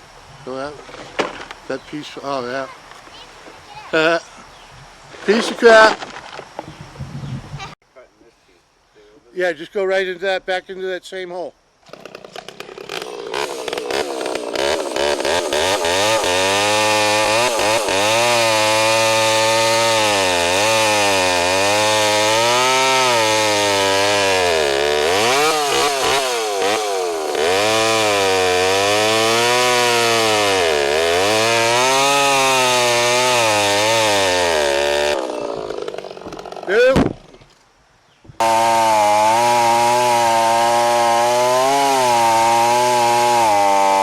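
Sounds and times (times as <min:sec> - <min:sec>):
chainsaw cutting wood: 0:00.8 - 0:01.7, 0:05.2 - 0:06.6, 0:11.8 - 0:37.6, 0:38.4 - 0:44.0.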